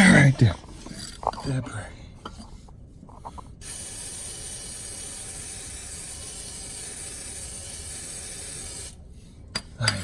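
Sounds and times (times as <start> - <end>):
aerosol can spraying hiss: 3.6 - 9.0.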